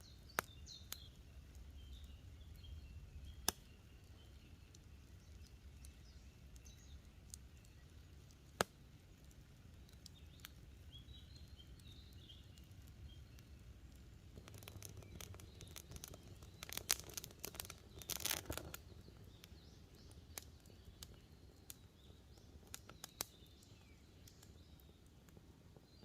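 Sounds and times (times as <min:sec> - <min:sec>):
campfire crackling and popping: 0:00.0 - 0:26.0
faint bird chirps: 0:00.0 - 0:26.0.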